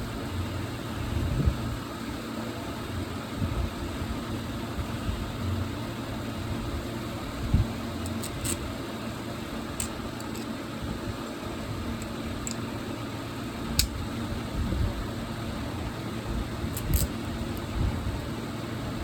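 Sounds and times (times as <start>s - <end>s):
exhaust fan motor humming: 0.0s - 19.0s
sharp clicks: 8.0s - 8.6s, 13.8s - 14.0s.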